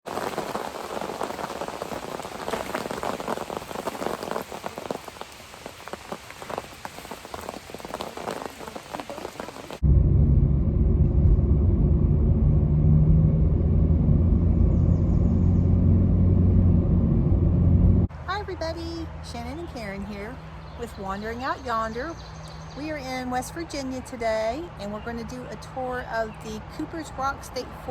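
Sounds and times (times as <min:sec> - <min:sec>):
rain pattering: 0:00.0 - 0:09.8
deep steady rumble: 0:09.8 - 0:18.1.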